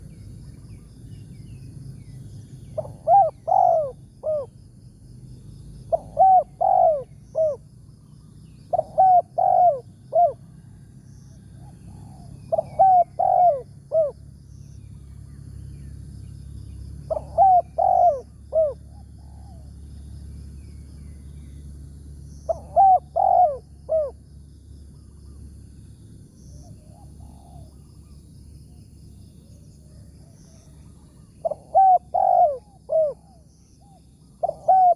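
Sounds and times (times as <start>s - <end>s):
dove cooing: 2.8s - 4.6s, 5.8s - 7.7s, 8.6s - 10.7s, 11.6s - 14.2s, 17.1s - 19.8s, 22.5s - 24.2s, 26.7s - 27.9s, 29.9s - 34.9s.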